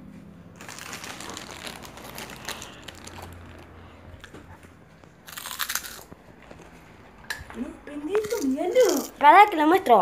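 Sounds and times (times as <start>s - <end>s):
crackling crunch: 0.6s - 6.8s.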